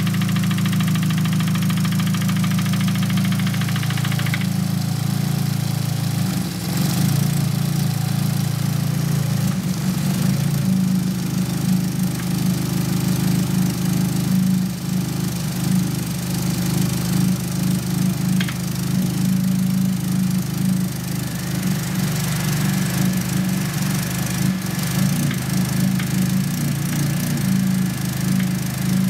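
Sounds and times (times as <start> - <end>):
fast knocking from engine: 0.0 - 5.4, 10.1 - 29.0
car engine idling: 0.0 - 29.0.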